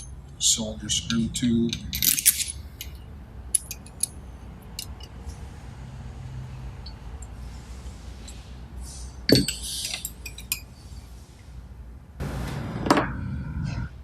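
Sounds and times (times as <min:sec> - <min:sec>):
small metal parts clinking: 0:01.7 - 0:05.3, 0:09.3 - 0:10.8.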